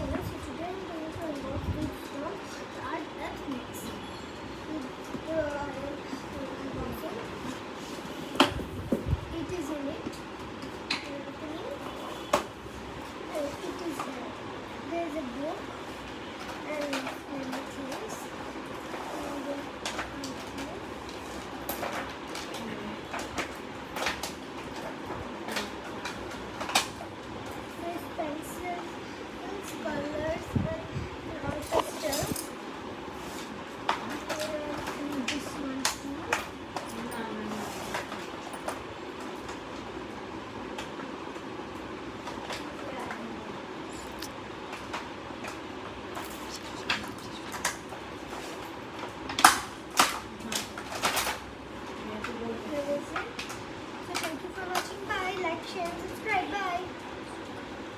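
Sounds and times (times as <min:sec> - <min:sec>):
steady low hum: 0:00.0 - 0:57.9.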